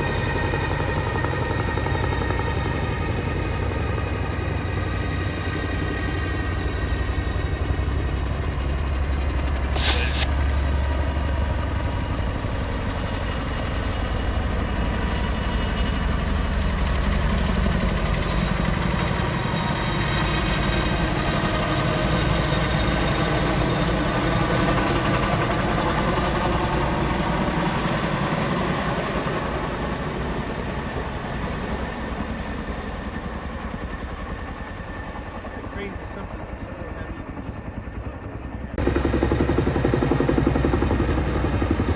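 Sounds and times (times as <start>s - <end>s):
large engine running: 30.6s - 41.9s.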